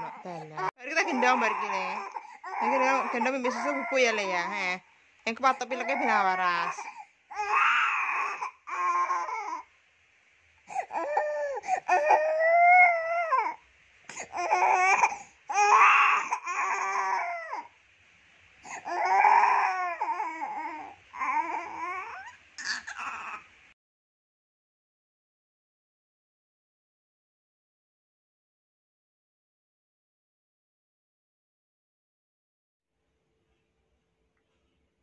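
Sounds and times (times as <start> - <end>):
baby crying: 0.0 - 4.3, 5.5 - 9.7, 10.7 - 17.7, 18.6 - 23.5.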